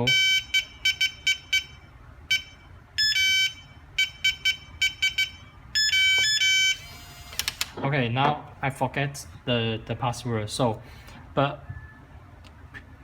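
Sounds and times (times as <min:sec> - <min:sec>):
keypad lock beeps: 0:02.3 - 0:07.6.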